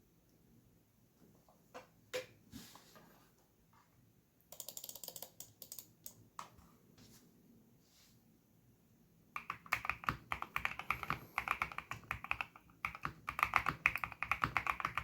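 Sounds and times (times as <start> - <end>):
faint mechanical keyboard typing: 4.4 - 6.7, 9.4 - 15.0.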